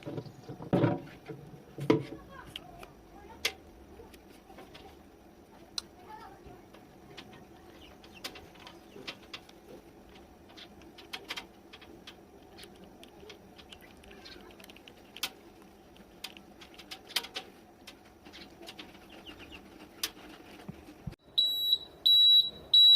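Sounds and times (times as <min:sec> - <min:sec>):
loud high electronic beep: 0:21.4 - 0:22.9.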